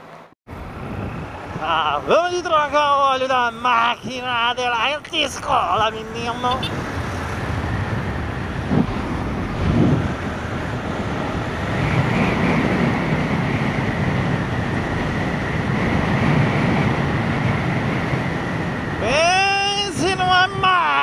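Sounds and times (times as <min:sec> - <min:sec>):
thin steady whine: 0:00.0 - 0:06.8
wind rushing over microphone: 0:00.5 - 0:21.0.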